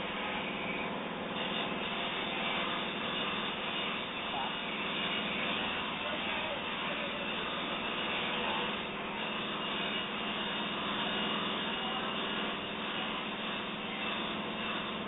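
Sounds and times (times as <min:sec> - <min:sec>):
drill machine humming with hiss: 0:00.0 - 0:15.0.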